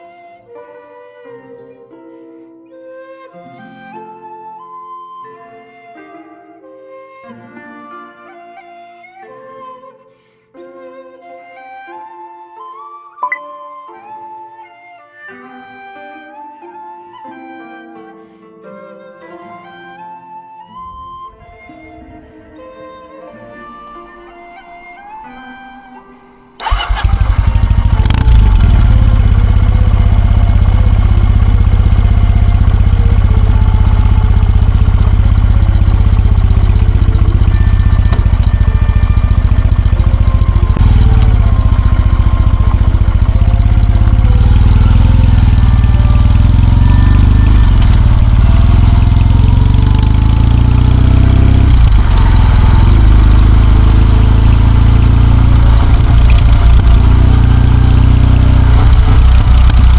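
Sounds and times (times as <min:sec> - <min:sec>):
motorcycle engine rumble: 0:26.6 - 0:59.9.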